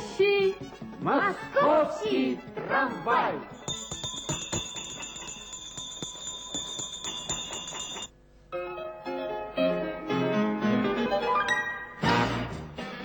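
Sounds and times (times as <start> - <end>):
small bell ringing quickly: 3.6 - 8.1.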